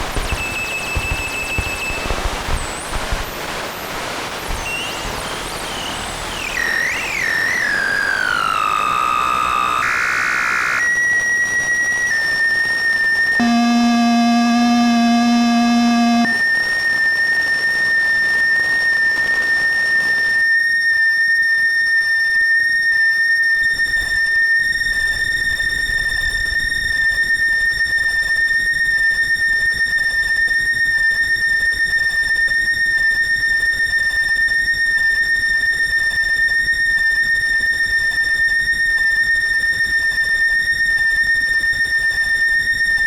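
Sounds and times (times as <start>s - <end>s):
synthesizer tones: 13.4s - 16.4s.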